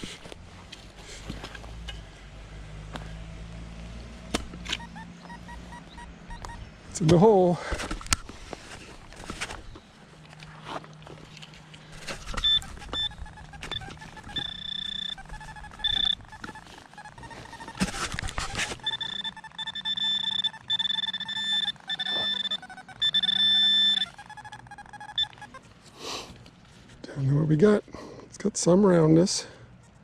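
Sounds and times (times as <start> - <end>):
electronic beeps: 4.7 - 6.7, 12.3 - 25.6
digging in sandy soil: 6.9 - 19.4.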